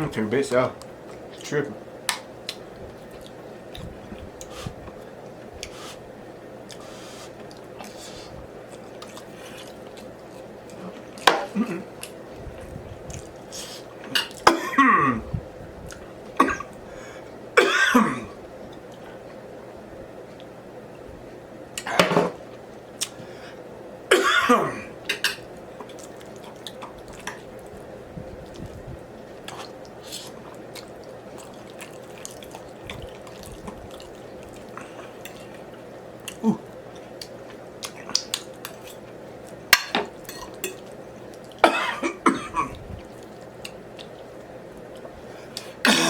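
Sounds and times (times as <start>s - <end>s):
low room hum: 0.0s - 46.0s
person coughing: 11.4s - 11.9s, 14.4s - 15.3s, 16.4s - 16.7s, 17.6s - 18.4s, 24.1s - 24.9s, 41.6s - 42.8s.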